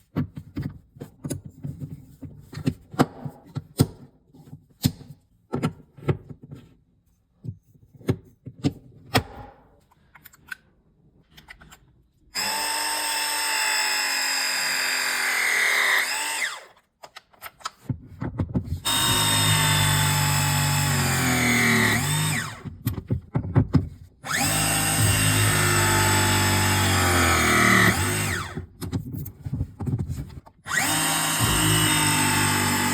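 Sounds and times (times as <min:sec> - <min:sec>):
press tool motor whine: 0:12.4 - 0:16.7, 0:18.9 - 0:22.6, 0:24.3 - 0:28.6, 0:30.7 - 0:32.9.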